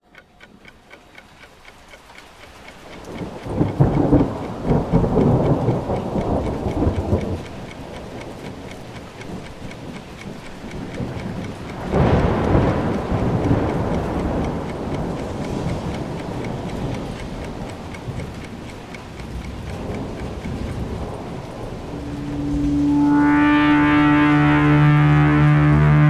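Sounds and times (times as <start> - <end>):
faint regular ticking: 0.0 - 24.8
rain falling: 0.2 - 26.0
thunder rolling: 3.4 - 8.7, 11.0 - 18.3, 19.8 - 26.0.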